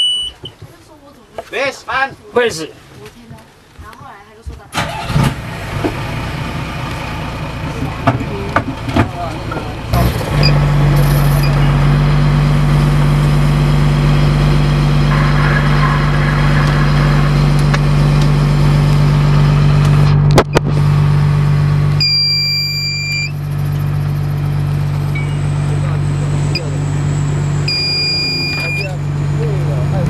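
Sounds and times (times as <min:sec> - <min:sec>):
high electronic beep: 0:00.0 - 0:00.5, 0:10.4 - 0:11.8, 0:22.0 - 0:23.4, 0:25.1 - 0:26.8, 0:27.7 - 0:29.0
boat engine humming: 0:05.7 - 0:30.0.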